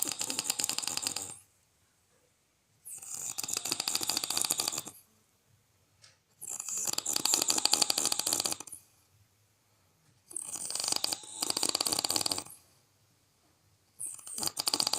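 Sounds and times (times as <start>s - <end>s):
person snoring: 0.0s - 1.4s, 2.9s - 5.0s, 6.4s - 8.8s, 10.3s - 12.6s, 14.0s - 14.9s.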